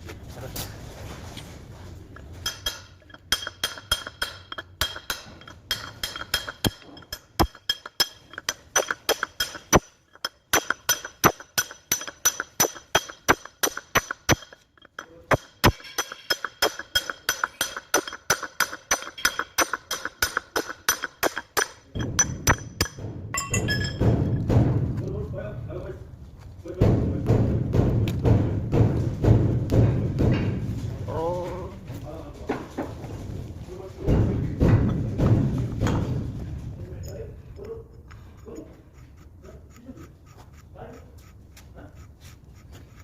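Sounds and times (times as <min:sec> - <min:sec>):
hammer striking steel: 0:02.4 - 0:24.8.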